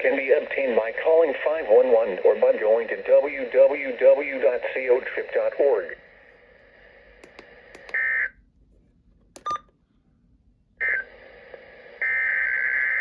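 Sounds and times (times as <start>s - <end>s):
faint radio static: 0.0s - 8.4s, 10.8s - 13.0s
click: 7.2s - 8.0s.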